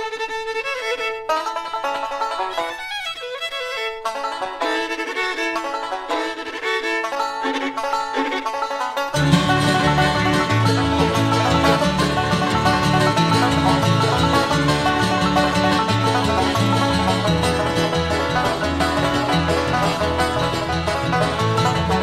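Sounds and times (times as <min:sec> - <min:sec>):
banjo picking: 0:00.0 - 0:22.0
fiddle: 0:00.0 - 0:22.0
guitar: 0:00.0 - 0:22.0
steady bass line: 0:09.2 - 0:22.0.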